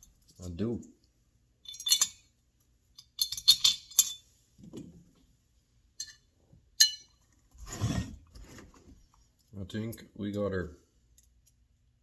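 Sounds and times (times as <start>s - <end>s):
metal parts and tools clinking: 1.6s - 4.3s.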